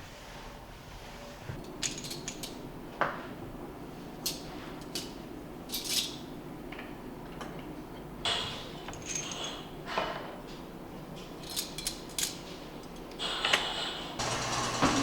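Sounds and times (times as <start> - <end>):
low humming machine: 14.2 - 15.0.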